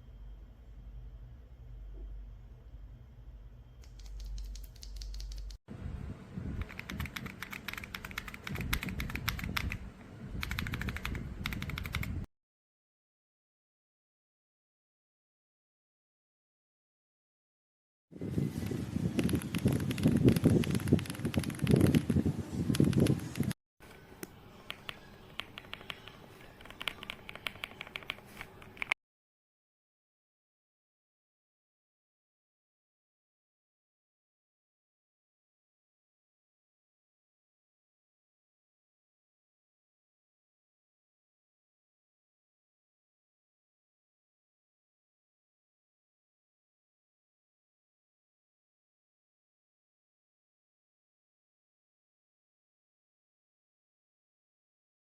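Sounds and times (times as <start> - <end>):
mechanical keyboard typing: 3.8 - 5.6, 6.6 - 9.8, 10.4 - 12.2, 19.2 - 23.5, 24.7 - 29.0.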